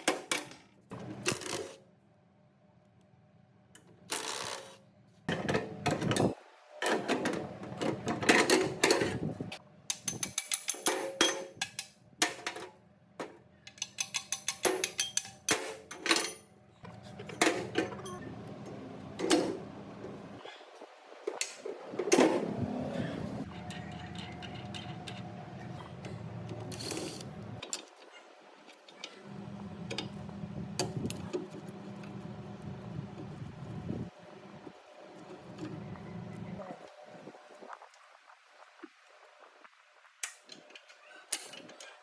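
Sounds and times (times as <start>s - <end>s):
metal parts clicking and knocking: 9.9s - 16.4s.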